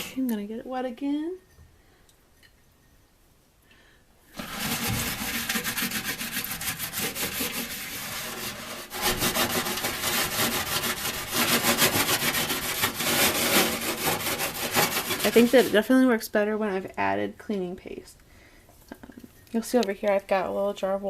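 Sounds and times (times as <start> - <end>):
steel scrubber scratching: 4.4 - 15.9.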